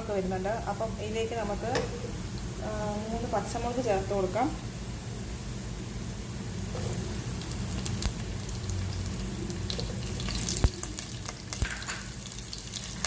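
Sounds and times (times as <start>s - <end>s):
food frying in hot oil: 5.4s - 13.0s.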